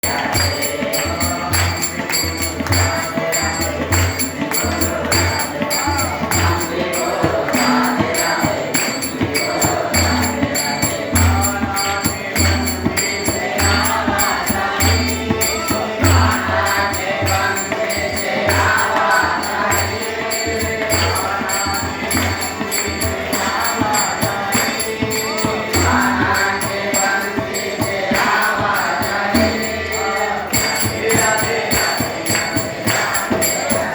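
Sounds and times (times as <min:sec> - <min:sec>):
jingling tambourine percussion: 0:00.0 - 0:33.9.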